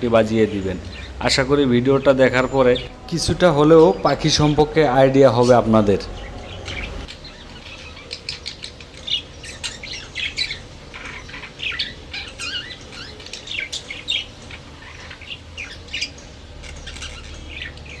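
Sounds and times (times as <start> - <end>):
budgerigars chirping and squawking: 0.0 - 18.0.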